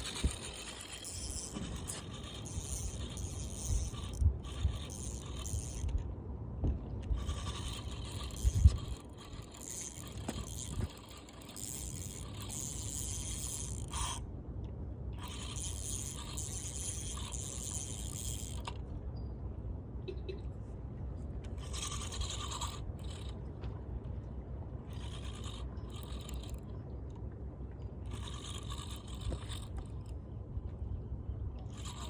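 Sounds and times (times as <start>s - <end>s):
fishing reel ratcheting: 0.0s - 6.0s, 7.2s - 14.2s, 15.2s - 18.8s, 21.6s - 23.4s, 24.9s - 26.6s, 28.1s - 30.2s, 31.7s - 32.0s
wind rumble on microphone: 0.0s - 11.2s.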